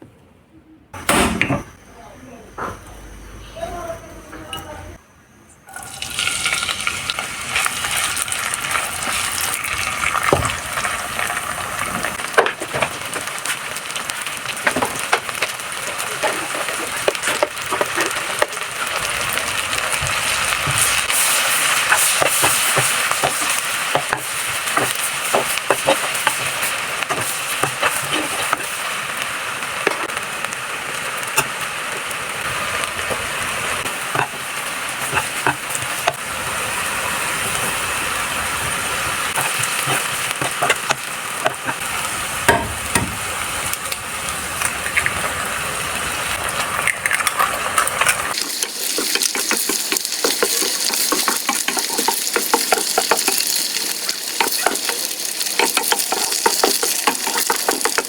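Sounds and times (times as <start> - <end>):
food sizzling in oil: 5.7 - 58.0
spatula scraping a pan: 20.8 - 28.7, 39.4 - 41.8, 48.1 - 53.6.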